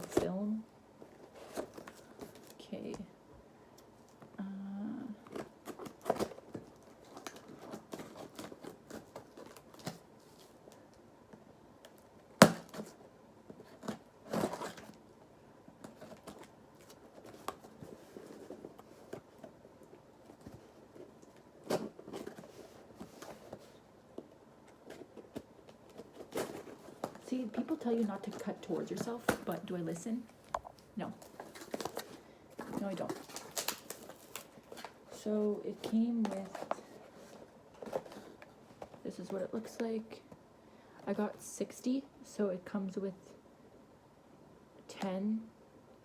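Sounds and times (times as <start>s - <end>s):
plastic bag rustling: 24.8s - 39.1s.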